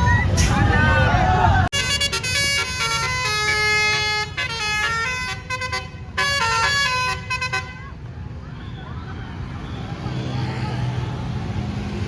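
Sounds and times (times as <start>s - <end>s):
low vehicle and crowd rumble: 0.0s - 12.0s
bus air horns playing a tune: 1.7s - 8.0s.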